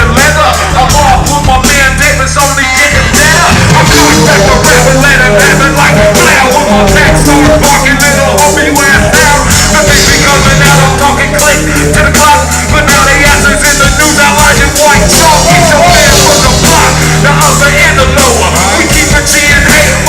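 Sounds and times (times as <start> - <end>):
bass: 0.0 - 20.0
drum beat: 0.0 - 20.0.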